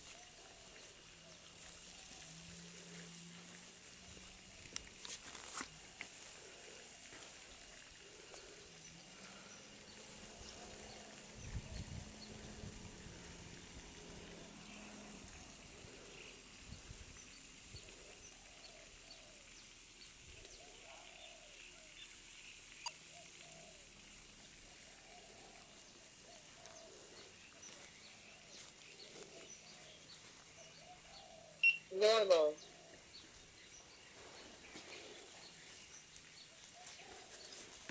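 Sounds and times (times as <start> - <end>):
faint low hum: 5.8 - 19.4
faint bird calls: 20.4 - 37.9.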